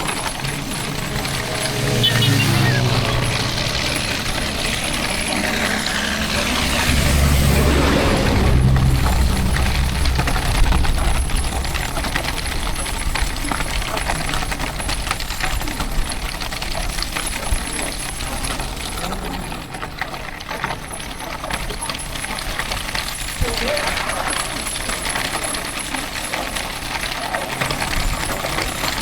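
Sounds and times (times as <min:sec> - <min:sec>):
deep rumble: 0:00.0 - 0:15.7
cart wheels rattling on pavement: 0:00.0 - 0:29.0.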